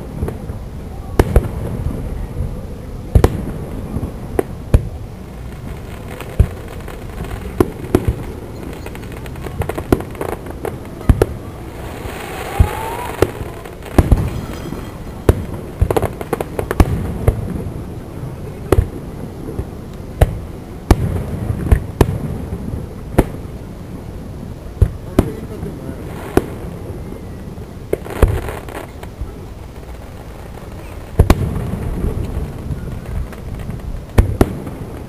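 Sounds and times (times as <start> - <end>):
fireworks booming: 0.0 - 35.0
rising firework whistle: 11.6 - 15.6.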